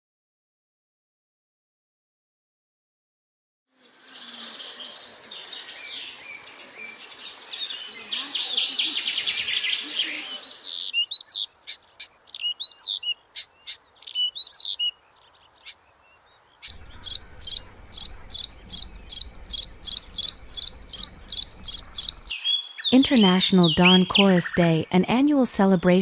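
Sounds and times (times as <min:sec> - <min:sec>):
high bird chirp: 0:16.6 - 0:24.8
bird whistling phrases: 0:16.7 - 0:24.6.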